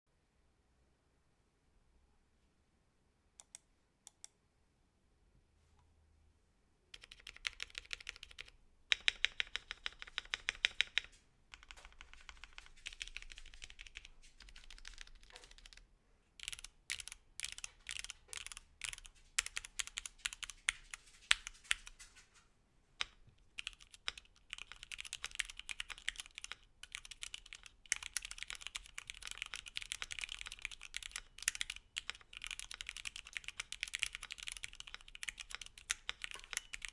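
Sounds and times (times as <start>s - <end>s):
mechanical keyboard typing: 7.0s - 15.8s, 16.4s - 22.1s, 23.0s - 36.9s.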